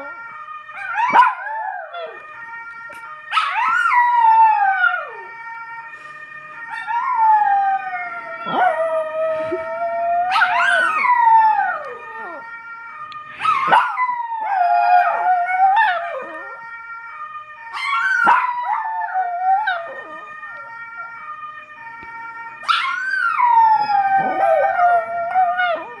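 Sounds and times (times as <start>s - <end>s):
fire siren: 0.0s - 26.0s
dogs howling: 0.7s - 2.3s, 2.9s - 5.3s, 6.7s - 12.5s, 13.3s - 16.6s, 17.7s - 21.2s, 22.6s - 26.0s.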